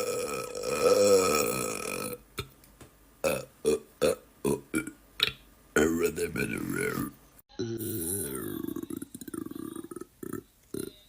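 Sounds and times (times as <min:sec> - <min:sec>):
man burping: 0:00.0 - 0:02.5, 0:03.2 - 0:05.4, 0:06.9 - 0:11.0.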